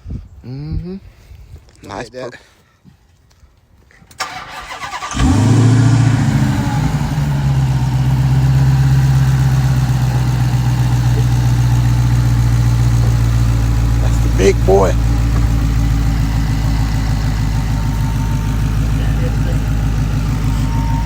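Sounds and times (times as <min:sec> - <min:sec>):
car engine starting and idling: 0:04.2 - 0:21.0.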